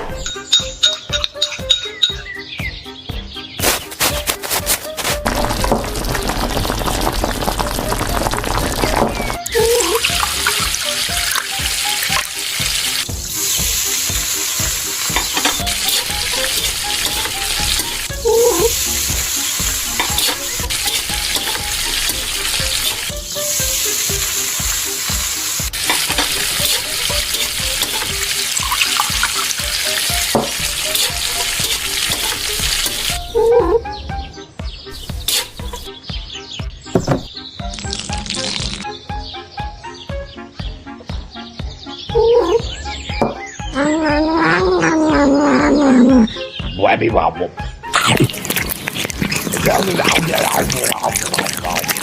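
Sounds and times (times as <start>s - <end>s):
food sizzling in a pan: 5.1s - 33.2s.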